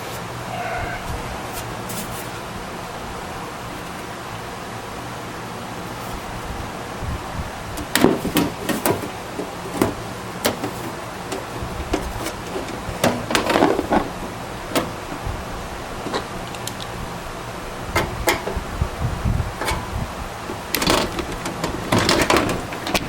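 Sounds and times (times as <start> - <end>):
steady low hum: 0.0 - 7.9
hard parts clicking and knocking: 20.5 - 23.0.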